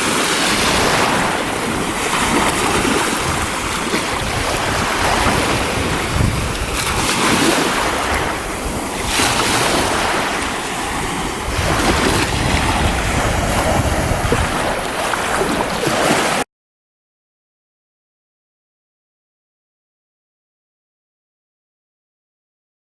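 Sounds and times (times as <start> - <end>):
surf washing onto shore: 0.0 - 16.4
wind buffeting microphone: 0.0 - 16.4.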